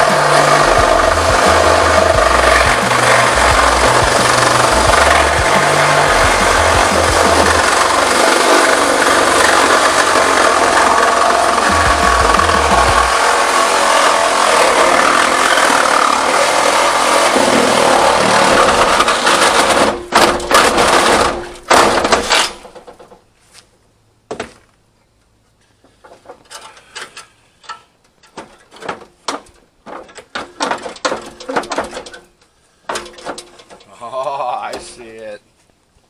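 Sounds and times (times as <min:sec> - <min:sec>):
power tool cutting sheet metal: 0:00.0 - 0:22.6
metal knocks and rattles: 0:28.2 - 0:32.3.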